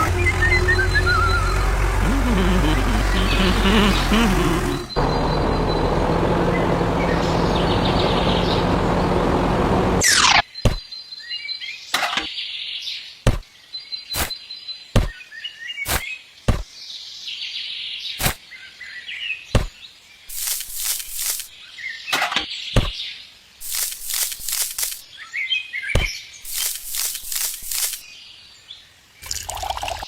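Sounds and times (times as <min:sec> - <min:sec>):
birds chirping: 0:00.0 - 0:10.0.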